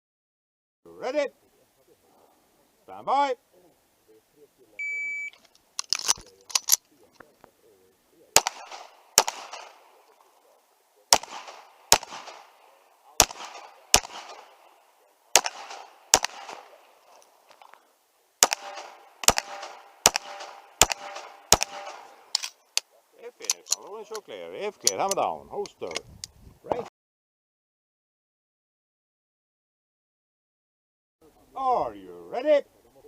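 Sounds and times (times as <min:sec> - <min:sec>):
shot timer beep: 0:04.8 - 0:05.4
handgun shots: 0:08.4 - 0:09.8, 0:11.1 - 0:12.6, 0:13.2 - 0:14.6, 0:15.3 - 0:16.8, 0:18.4 - 0:22.6.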